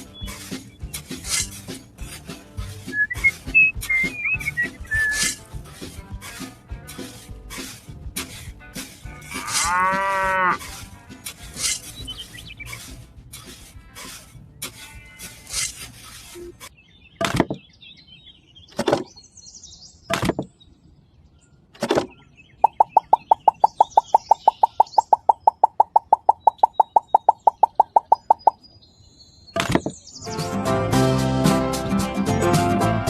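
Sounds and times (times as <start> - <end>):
fast even beeps: 2.9 - 5.3, 22.6 - 28.6
sharp clicks and knocks: 16.6 - 17.6, 20.1 - 20.5, 21.8 - 28.5, 29.6 - 30.0.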